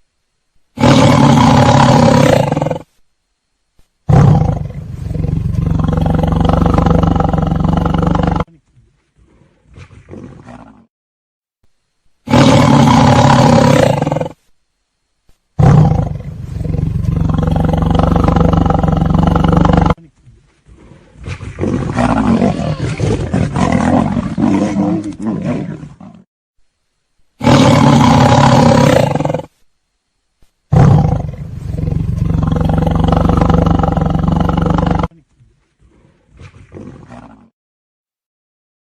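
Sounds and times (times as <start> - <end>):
lion roaring: 0.8 - 2.9, 4.1 - 8.5, 9.2 - 10.9, 12.3 - 14.4, 15.6 - 20.0, 20.7 - 26.2, 27.4 - 29.5, 30.7 - 35.1, 35.8 - 37.5.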